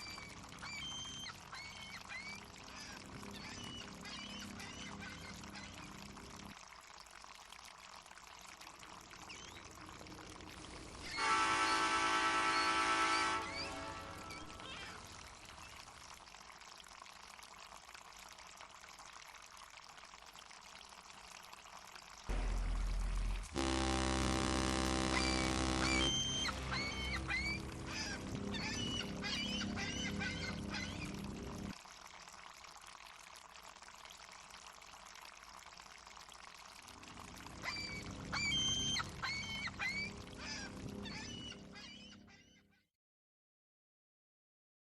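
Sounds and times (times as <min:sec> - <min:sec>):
faint seagull calls: 0:00.0 - 0:06.0, 0:25.1 - 0:31.3, 0:37.6 - 0:42.9
water lapping: 0:20.4 - 0:42.4
low steady drone: 0:22.3 - 0:31.7.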